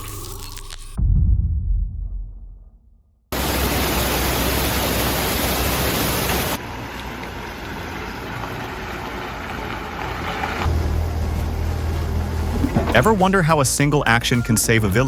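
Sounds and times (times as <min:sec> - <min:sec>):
deep boom: 0:01.0 - 0:03.3
low hum: 0:10.7 - 0:14.2.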